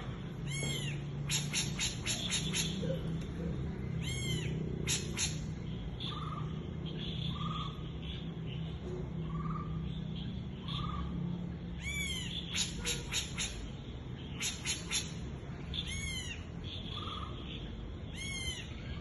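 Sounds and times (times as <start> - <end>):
steady low hum: 0.0 - 19.0
animal calls: 0.4 - 6.6.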